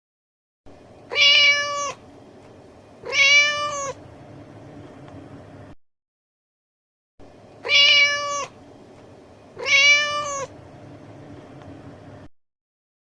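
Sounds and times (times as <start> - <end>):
cat meowing: 1.1 - 2.0, 3.0 - 4.0, 7.6 - 8.6, 9.6 - 10.5.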